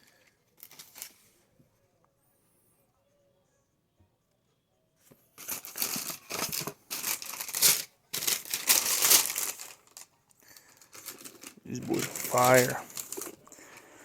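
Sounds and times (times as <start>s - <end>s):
paper packing crinkling: 0.6s - 1.2s, 5.4s - 14.0s.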